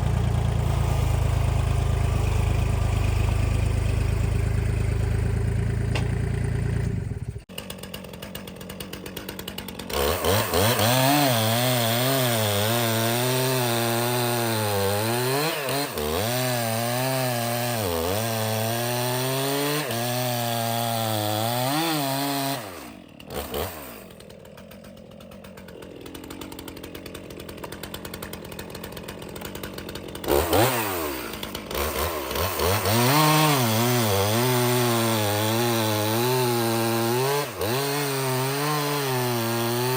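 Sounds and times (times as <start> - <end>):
chainsaw revving and cutting log: 0.0 - 39.9.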